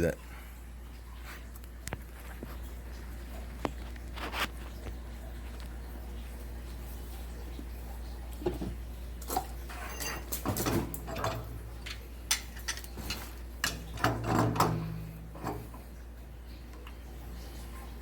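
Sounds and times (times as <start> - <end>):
steady low hum: 5.3 - 18.0.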